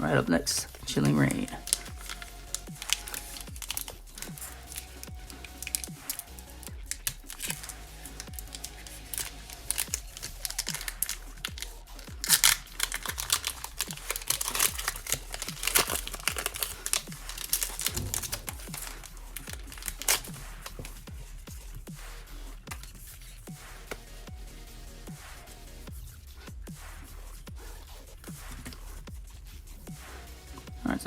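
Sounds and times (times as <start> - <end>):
foil wrapper crinkling and tearing: 0.6 - 21.1.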